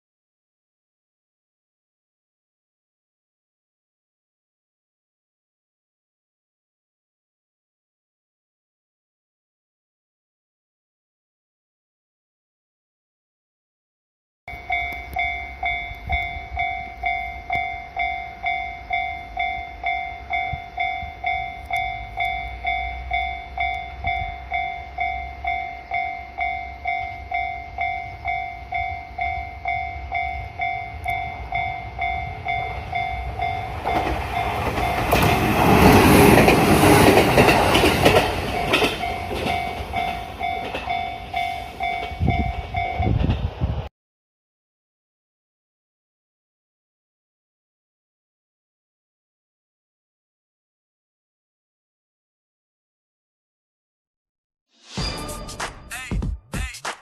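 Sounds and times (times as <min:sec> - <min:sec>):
level crossing warning bell: 0:14.5 - 0:43.2
train rumble and wheel clatter: 0:14.5 - 0:43.9.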